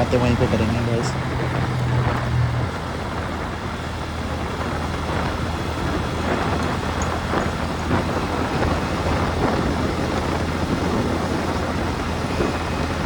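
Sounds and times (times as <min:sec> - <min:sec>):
motorcycle engine running: 0:00.0 - 0:13.0
wind and road noise: 0:00.0 - 0:13.0.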